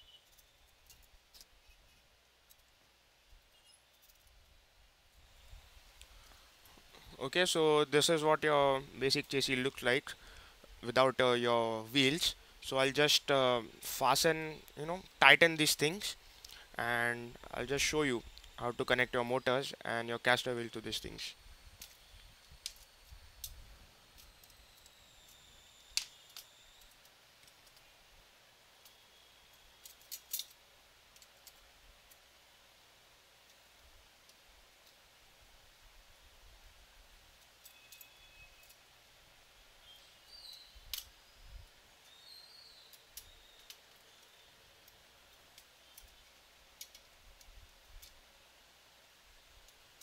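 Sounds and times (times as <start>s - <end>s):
faint clicks of tools on metal: 0.1s - 2.8s, 21.8s - 25.4s, 26.0s - 27.9s, 28.8s - 32.3s, 33.4s - 35.0s, 37.3s - 38.9s, 40.4s - 41.2s, 42.8s - 48.3s
metallic clicks of tools on bolts: 29.8s - 32.2s.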